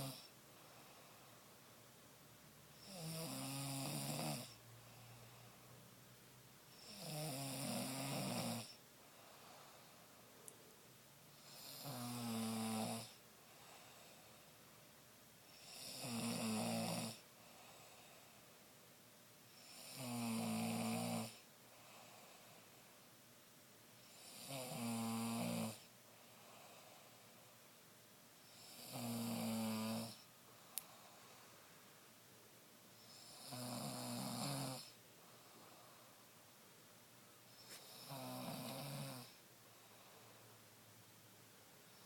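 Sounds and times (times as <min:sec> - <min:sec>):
man snoring: 0:00.0 - 0:00.3, 0:02.8 - 0:04.6, 0:06.7 - 0:08.8, 0:11.4 - 0:13.2, 0:15.5 - 0:17.3, 0:19.6 - 0:21.5, 0:24.1 - 0:25.9, 0:28.6 - 0:30.2, 0:33.1 - 0:35.0, 0:37.6 - 0:39.4.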